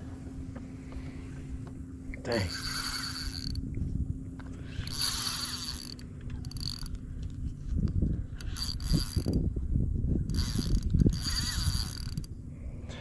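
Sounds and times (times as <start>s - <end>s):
fishing reel drag buzzing: 2.1s - 12.4s.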